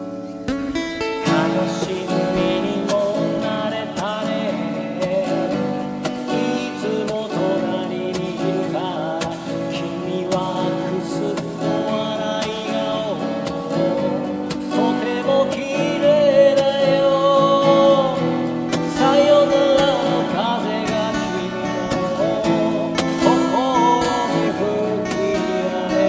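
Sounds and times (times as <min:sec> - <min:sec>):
acoustic guitar accompaniment: 0:00.0 - 0:26.0
bending melody line: 0:00.5 - 0:04.0.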